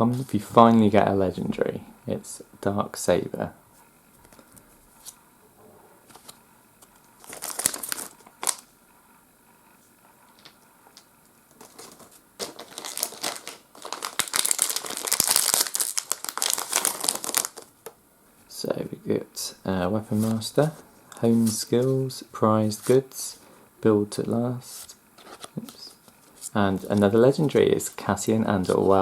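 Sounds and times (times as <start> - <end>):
foil wrapper crinkling and tearing: 7.2 - 8.7, 11.6 - 17.9.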